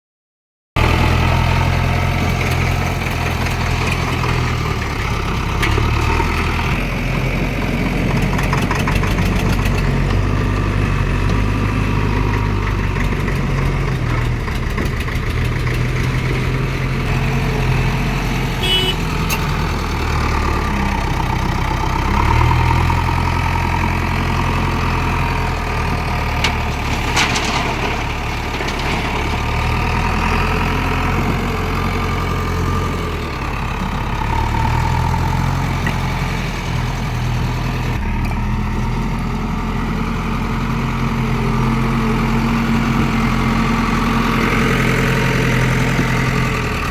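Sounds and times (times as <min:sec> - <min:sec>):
diesel engine running under load: 0:00.8 - 0:46.9.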